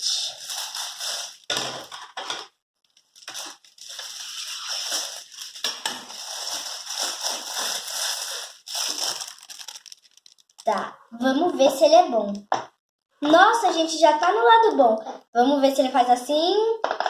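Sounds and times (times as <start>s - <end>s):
plastic packaging crinkling: 2.8s - 10.8s.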